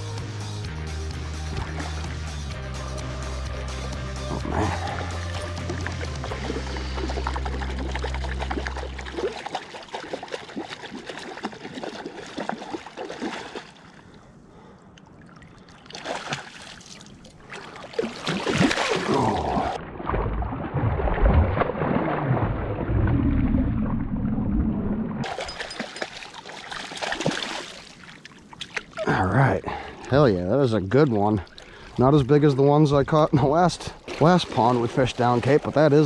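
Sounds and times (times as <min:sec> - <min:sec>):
background music: 0:00.0 - 0:09.2
water splashing and sloshing: 0:00.0 - 0:36.0.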